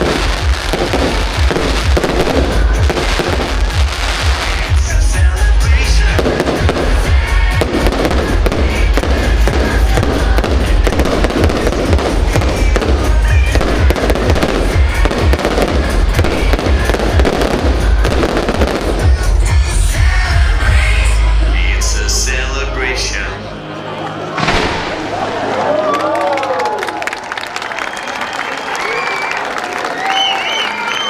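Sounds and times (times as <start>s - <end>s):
fireworks bangs and crackles: 0.0s - 20.2s
loud show music: 0.0s - 25.2s.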